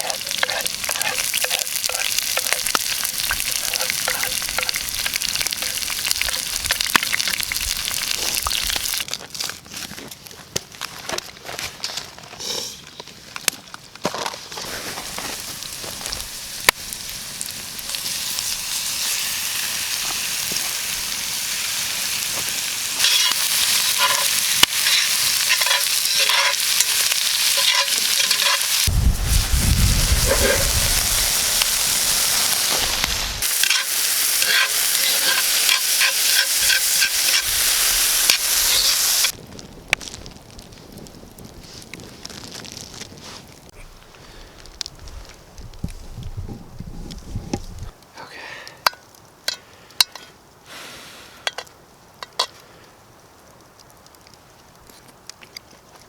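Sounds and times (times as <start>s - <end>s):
steak sizzling in a pan: 0.0s - 9.0s, 15.0s - 39.4s
pops and crackles: 0.0s - 11.3s, 22.2s - 48.1s, 53.5s - 56.0s
low rumble: 28.9s - 33.4s.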